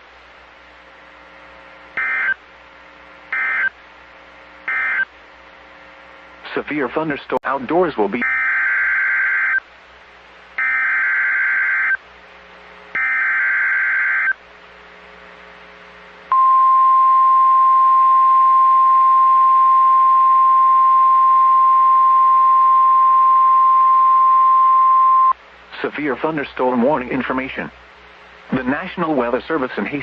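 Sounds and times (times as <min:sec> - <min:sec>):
buzzy digital data bursts: 0:02.0 - 0:02.4, 0:03.3 - 0:03.7, 0:04.7 - 0:05.1
steady warning alarm tone: 0:02.0 - 0:02.4, 0:03.3 - 0:03.8, 0:04.7 - 0:05.1, 0:08.2 - 0:09.6, 0:10.6 - 0:12.0, 0:13.0 - 0:14.4.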